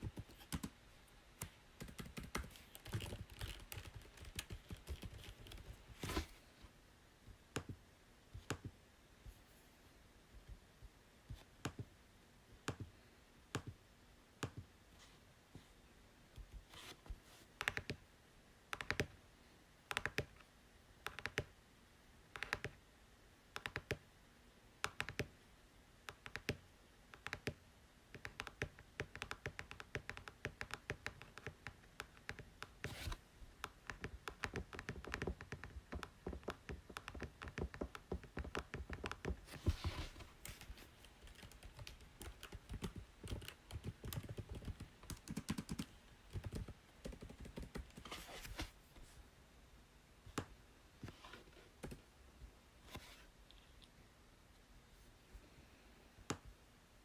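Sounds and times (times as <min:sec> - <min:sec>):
computer keyboard typing: 0:00.0 - 0:00.7, 0:01.4 - 0:05.7, 0:18.8 - 0:19.1, 0:22.4 - 0:22.8, 0:23.6 - 0:24.0, 0:28.2 - 0:32.5, 0:33.6 - 0:39.4, 0:40.4 - 0:48.0.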